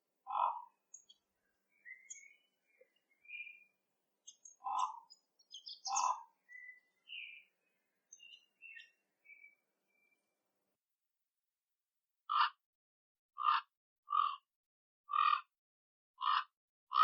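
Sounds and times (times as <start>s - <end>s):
raven calling: 0.2s - 1.2s, 4.2s - 7.4s.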